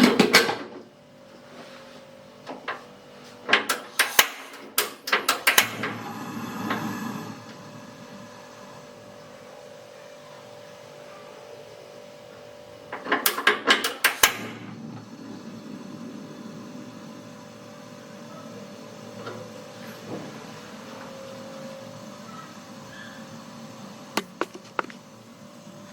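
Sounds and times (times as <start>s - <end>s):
faint steady hum: 5.5s - 11.2s, 11.8s - 25.9s
kitchen clicks and knocks: 12.9s - 14.4s.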